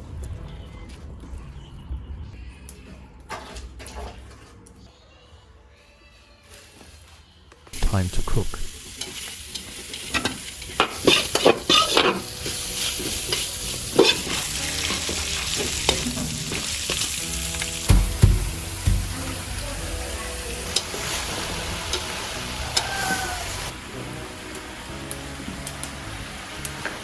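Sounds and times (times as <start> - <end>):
sausage sizzling in a pan: 7.8 - 27.0
utensil scraping a pan: 9.0 - 17.1
low knocks: 17.8 - 19.6.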